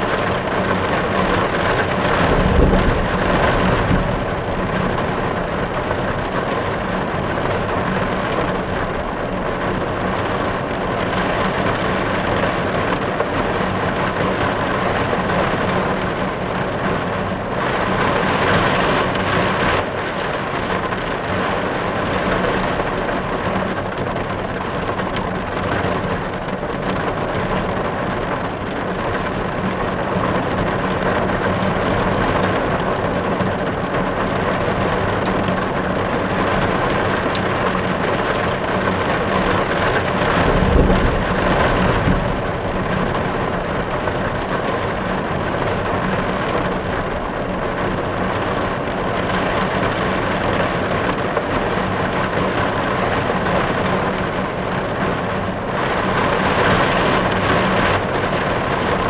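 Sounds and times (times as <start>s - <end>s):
rain drumming on car roof: 0.0s - 59.0s
low rumble: 1.9s - 6.2s, 39.5s - 45.6s.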